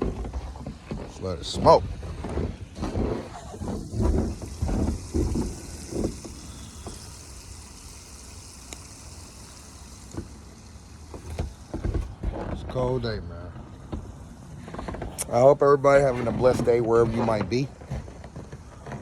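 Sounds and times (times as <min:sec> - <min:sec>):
low rumbling thumps: 0:00.0 - 0:07.2
chicken frying in hot oil: 0:02.8 - 0:14.2.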